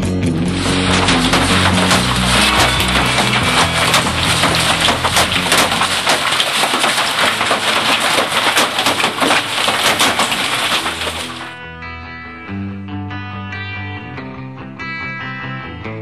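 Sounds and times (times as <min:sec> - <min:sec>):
hailstones clattering: 0:00.3 - 0:11.6.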